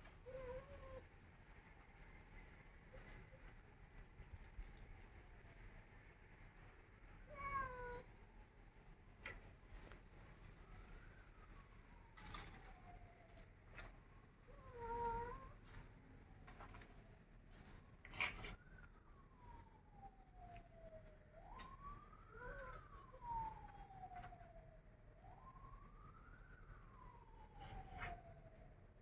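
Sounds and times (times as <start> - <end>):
emergency siren wailing: 10.1 - 29.0.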